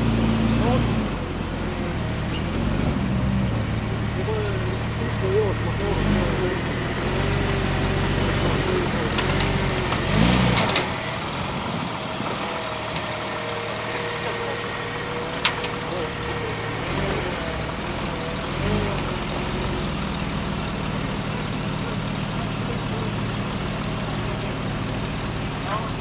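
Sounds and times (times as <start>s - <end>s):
vehicle engine idling: 0.0s - 26.0s
faint voices: 10.9s - 19.9s, 20.6s - 26.0s.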